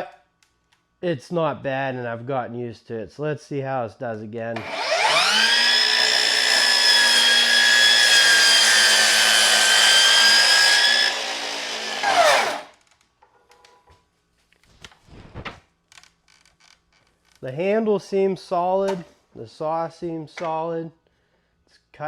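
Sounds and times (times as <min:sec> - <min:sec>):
miter saw cutting wood: 0:04.6 - 0:12.7.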